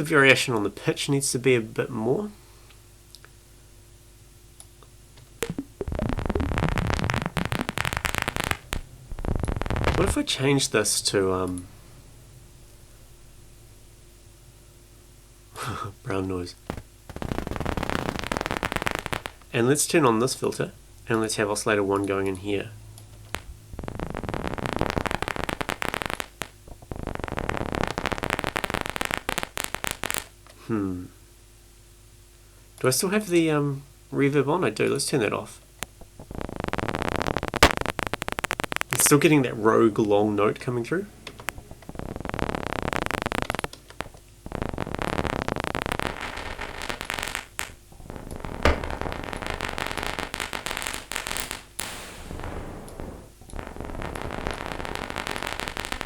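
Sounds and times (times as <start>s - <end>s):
sharp click: 48.7s - 49.1s.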